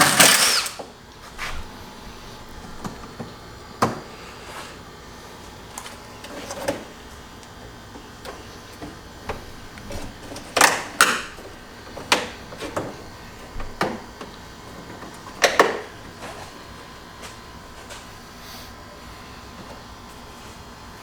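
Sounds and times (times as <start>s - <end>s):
hand tools clicking and knocking: 0.0s - 0.9s.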